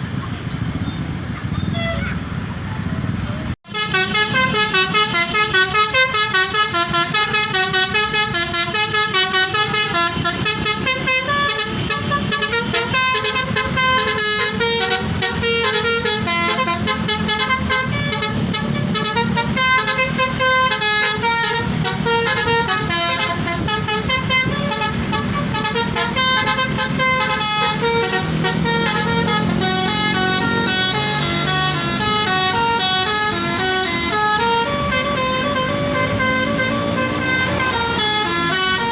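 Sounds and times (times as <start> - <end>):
bus engine: 0.0 - 38.9
bus multi-tone horn melody: 0.7 - 2.1, 3.6 - 38.9.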